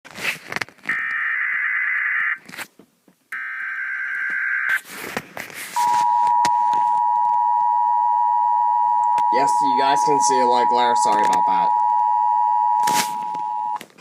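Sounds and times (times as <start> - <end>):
harsh buzzing data bursts: 3.4 - 4.8
steady two-tone attention signal: 5.8 - 13.8.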